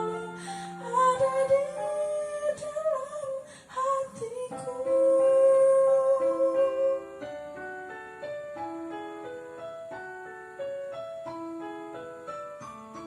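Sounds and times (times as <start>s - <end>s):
piano broken chords: 4.0s - 13.0s.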